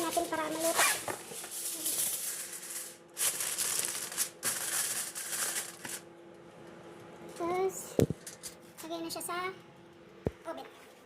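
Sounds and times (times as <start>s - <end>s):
aluminium foil crinkling: 0.0s - 6.1s.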